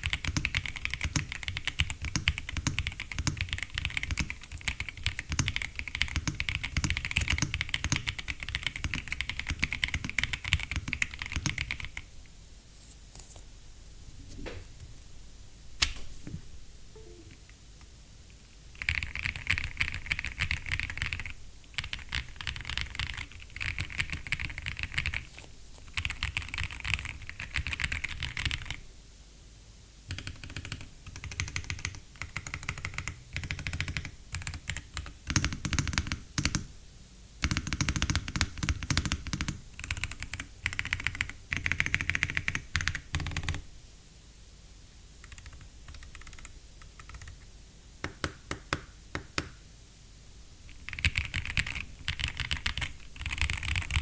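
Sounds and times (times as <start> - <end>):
mechanical keyboard typing: 0.0 - 12.1, 18.8 - 25.2, 25.9 - 28.8, 30.1 - 36.7, 37.4 - 43.6, 45.2 - 47.5, 50.7 - 54.0.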